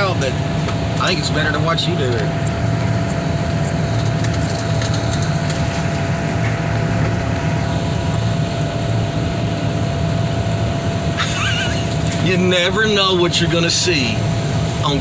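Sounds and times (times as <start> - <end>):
heavy machinery engine whining: 0.0 - 15.0
wood cracking and snapping: 3.0 - 7.5.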